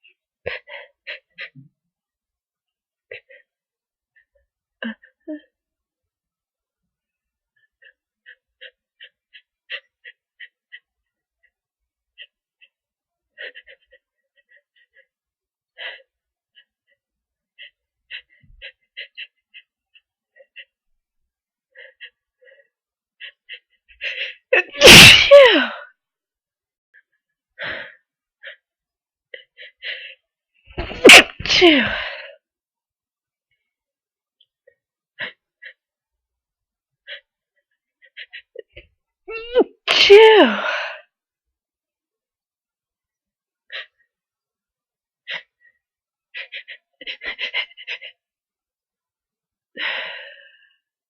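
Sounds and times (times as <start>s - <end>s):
loud sneeze: 24.8s - 25.7s, 30.8s - 32.0s, 39.9s - 40.6s.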